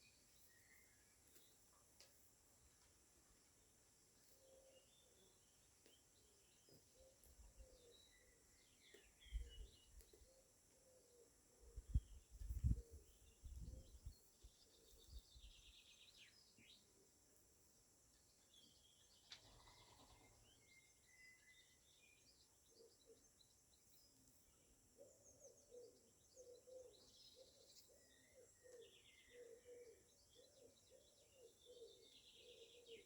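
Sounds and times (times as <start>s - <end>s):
faint birdsong: 0.0s - 33.0s
wind gusts on microphone: 11.8s - 14.1s.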